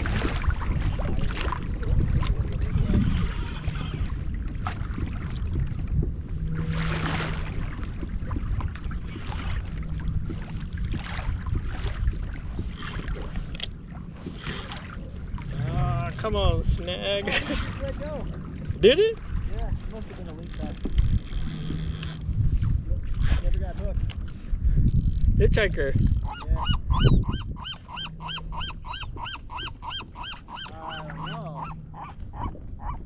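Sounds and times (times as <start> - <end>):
paddle splashes: 0.0 - 21.9
wind rumble on microphone: 0.0 - 33.0.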